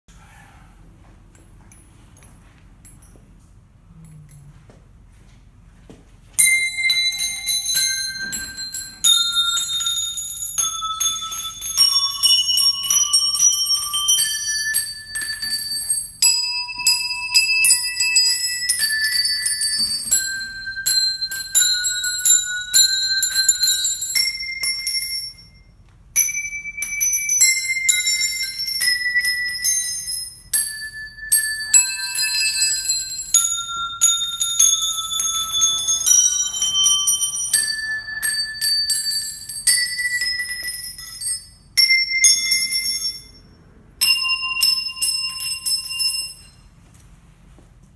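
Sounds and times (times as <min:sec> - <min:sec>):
bell-like chime melody: 0:06.4 - 0:46.7.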